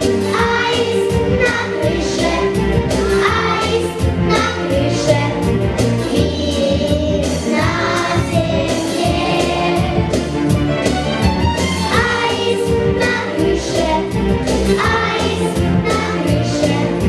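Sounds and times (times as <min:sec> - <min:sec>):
instrumental backing track with beat: 0:00.0 - 0:17.0
choir singing: 0:07.5 - 0:10.1, 0:11.9 - 0:14.0, 0:14.7 - 0:17.0.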